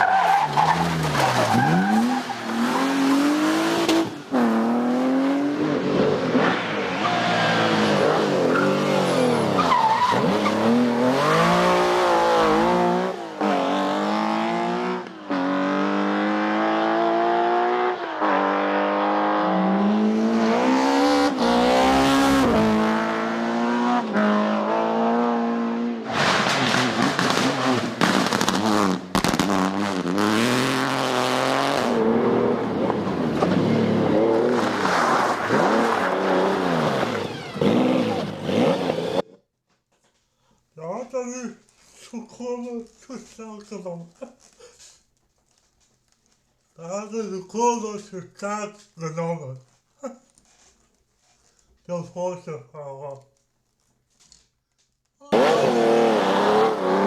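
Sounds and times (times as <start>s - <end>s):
rally car engines revving: 0.0s - 39.2s, 55.2s - 57.0s.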